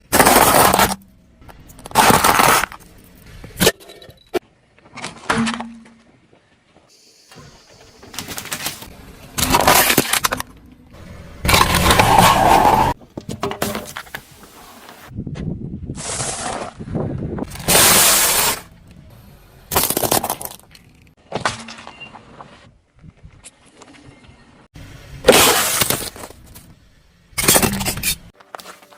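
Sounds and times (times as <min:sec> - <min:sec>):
tyre crushing objects: 0:00.0 - 0:01.0, 0:01.7 - 0:02.9, 0:11.4 - 0:15.1
objects crunching under car tyres: 0:00.0 - 0:03.7, 0:08.0 - 0:15.1, 0:16.0 - 0:18.8, 0:19.7 - 0:24.0, 0:25.2 - 0:26.8, 0:27.4 - 0:28.9.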